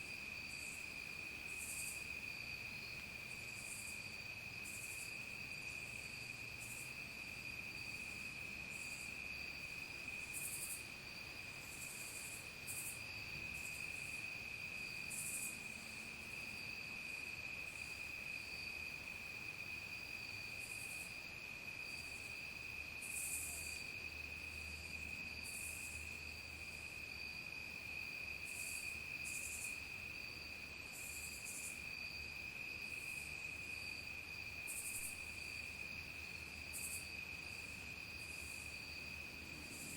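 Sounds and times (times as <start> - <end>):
crickets trilling: 0.0 - 39.9.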